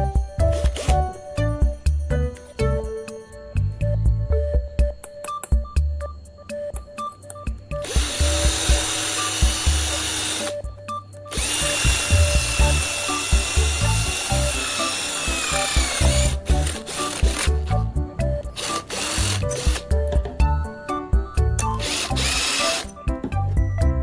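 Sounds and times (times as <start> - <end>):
background music with beat: 0.0 - 24.0
power tool whining: 7.8 - 10.6, 11.3 - 17.8, 18.5 - 20.0, 21.6 - 23.0.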